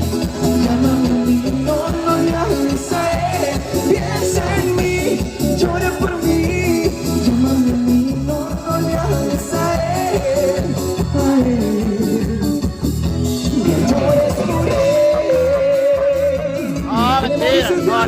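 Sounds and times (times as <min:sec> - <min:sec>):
song with sung melody: 0:00.0 - 0:18.0
steady bass beat: 0:00.0 - 0:18.0.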